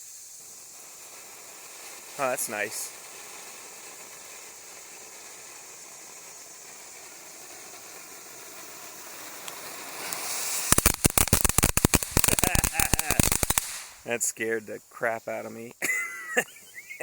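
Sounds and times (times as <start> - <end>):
rapid firework cracks: 0.0 - 14.1
firework fountain hissing: 0.0 - 17.0.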